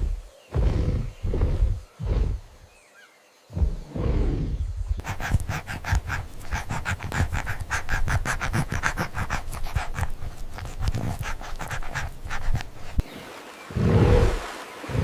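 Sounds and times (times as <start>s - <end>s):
low rumble: 3.6s - 5.0s
dog panting: 5.0s - 13.1s.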